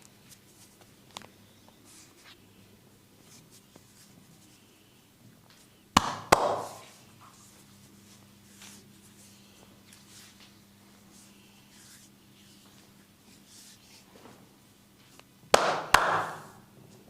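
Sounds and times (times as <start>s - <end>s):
soft clicks and rustles of hands: 0.0s - 2.4s.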